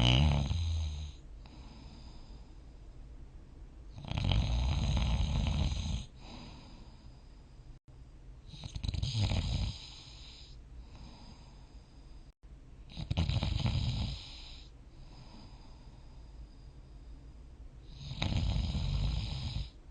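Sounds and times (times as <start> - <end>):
person snoring: 0.0 - 2.5, 4.0 - 7.1, 8.5 - 11.8, 12.9 - 16.3, 17.9 - 19.8
quiet breathing: 0.0 - 4.0, 5.4 - 8.8, 9.4 - 12.4, 13.5 - 19.9.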